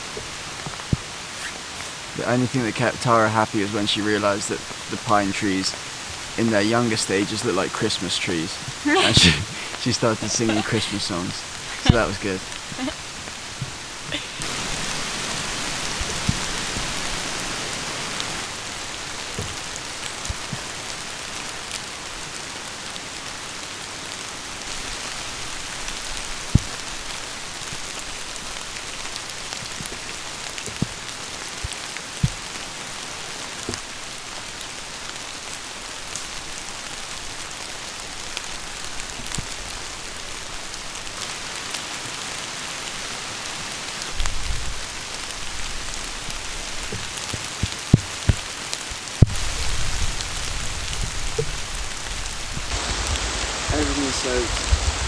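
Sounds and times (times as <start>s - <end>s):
heavy rain pouring: 0.0s - 55.0s
sharp ticks of raindrops: 2.0s - 10.0s, 11.0s - 55.0s.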